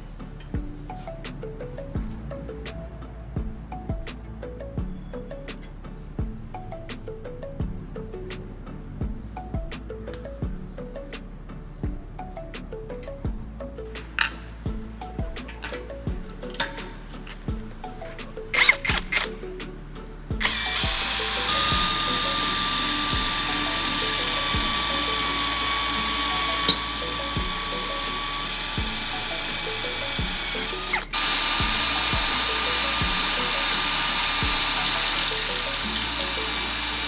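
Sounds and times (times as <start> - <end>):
background music with steady beat: 0.0 - 37.0
sharp metallic clicks: 15.4 - 19.4, 20.4 - 37.0
electric power tool whining: 16.5 - 19.4, 20.4 - 37.0.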